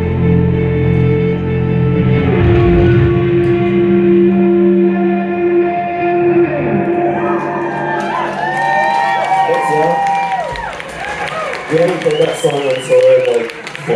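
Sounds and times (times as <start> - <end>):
bass and drums: 1.6 - 5.3
crowd whistling: 7.2 - 13.5.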